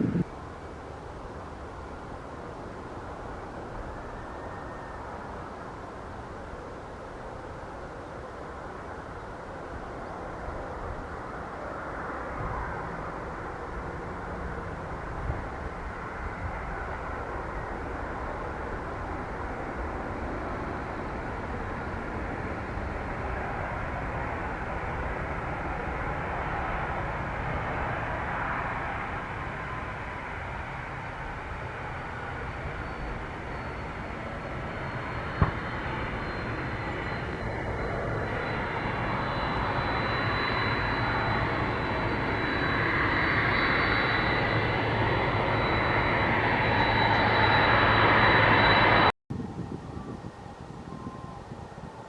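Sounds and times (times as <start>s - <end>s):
high whine: 0.0s - 0.4s, 32.5s - 51.4s
jet engines running: 0.0s - 49.1s.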